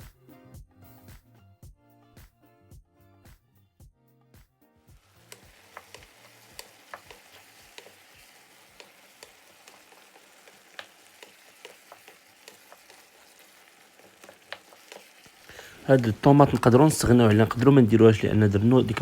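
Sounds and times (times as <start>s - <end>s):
food sizzling in a frying pan: 4.9s - 19.0s.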